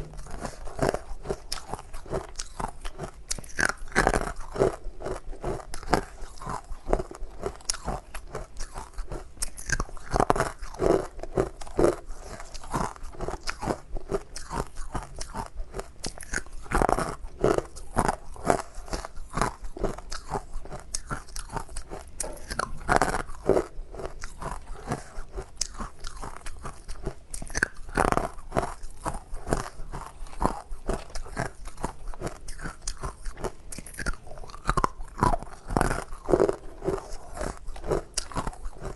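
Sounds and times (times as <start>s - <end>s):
ice being chewed: 0.0s - 38.9s.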